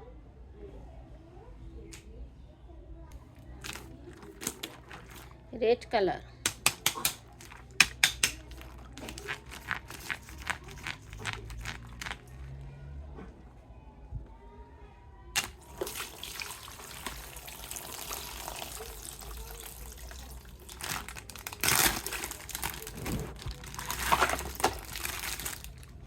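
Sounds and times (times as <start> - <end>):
plastic packaging crinkling: 3.4 - 5.4, 6.4 - 12.4, 15.4 - 26.0.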